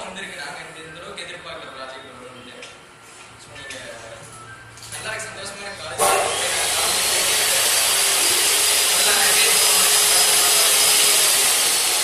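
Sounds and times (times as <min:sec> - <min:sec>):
drilling machine grinding hiss: 0:06.0 - 0:12.0.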